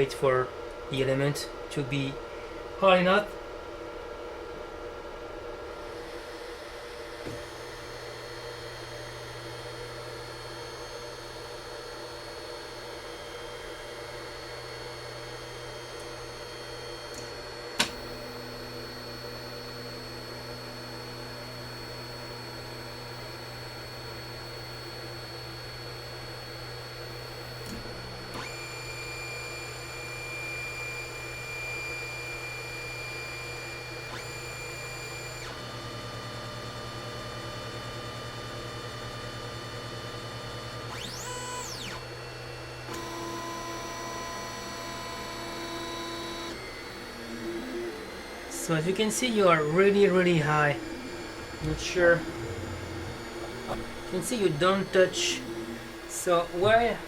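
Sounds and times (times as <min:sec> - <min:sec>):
printer motor and fan hum: 0:00.0 - 0:57.0
sharp click: 0:17.2 - 0:18.0
high-pitched whining tones: 0:49.3 - 0:57.0.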